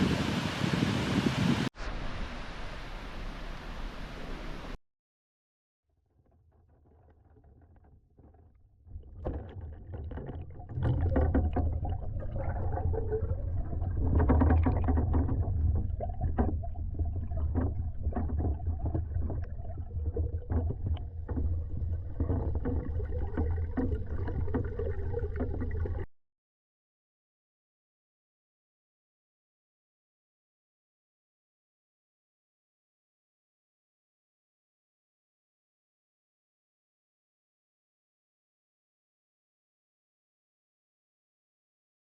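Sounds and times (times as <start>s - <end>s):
waterfall roaring: 0.0s - 4.7s.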